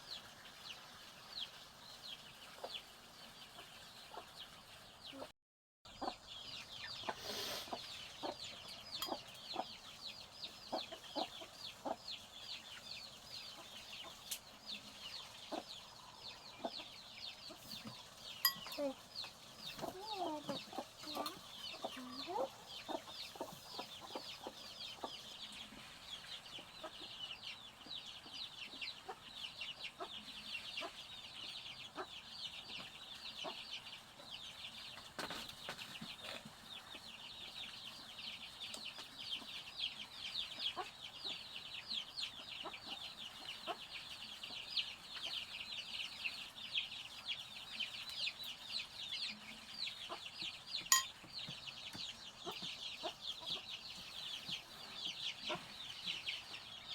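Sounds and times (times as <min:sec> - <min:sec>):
chicks peeping: 0:00.0 - 0:05.3, 0:05.9 - 0:56.9.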